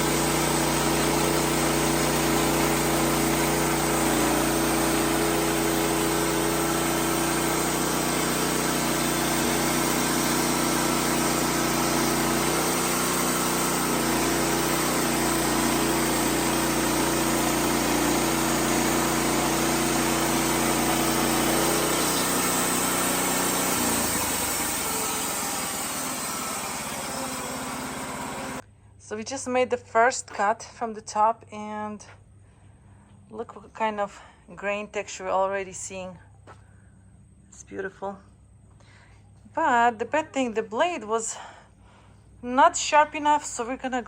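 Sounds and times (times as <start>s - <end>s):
band blade cutting log: 0.0s - 28.6s
sawmill engine droning: 0.0s - 28.6s.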